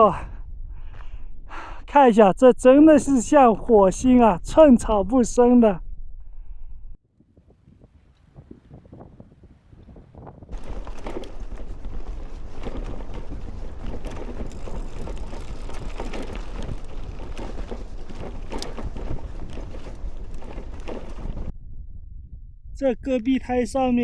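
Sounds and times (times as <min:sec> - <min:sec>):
wind buffeting microphone: 0:06.4 - 0:24.0.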